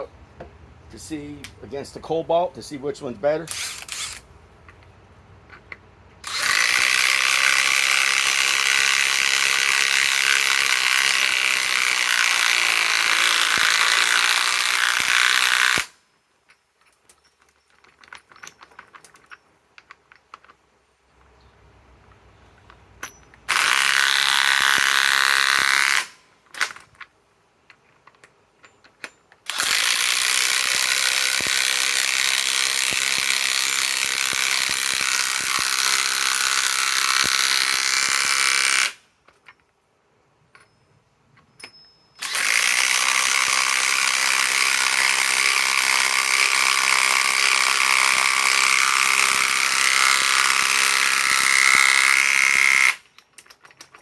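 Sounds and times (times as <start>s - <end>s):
impact wrench hammering screws: 3.4s - 4.8s, 5.5s - 16.0s, 23.0s - 27.1s, 28.9s - 39.5s, 41.6s - 54.0s.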